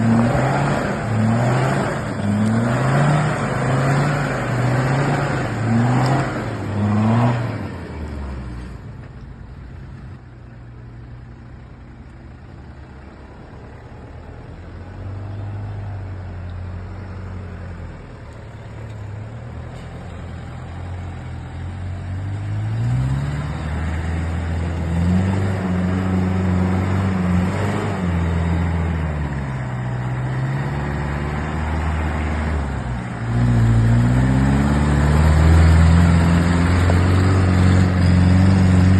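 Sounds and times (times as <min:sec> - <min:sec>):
off-road vehicle engine revving: 0:00.0 - 0:08.8, 0:13.0 - 0:38.9.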